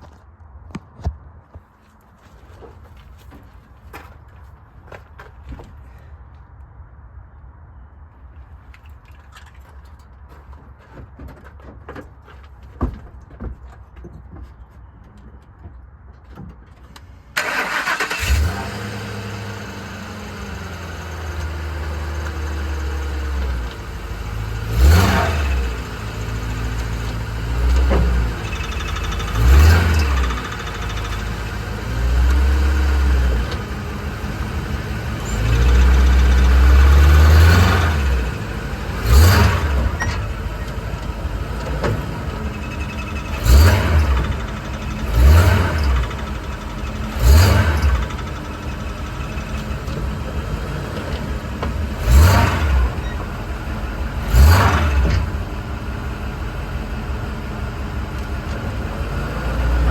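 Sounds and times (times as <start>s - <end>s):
truck engine idling and revving: 17.0s - 59.9s.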